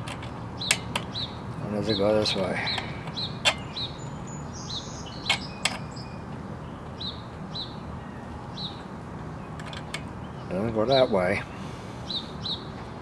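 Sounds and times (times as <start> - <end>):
small bird chirping: 0.4 - 1.5, 2.6 - 10.6, 11.5 - 12.7.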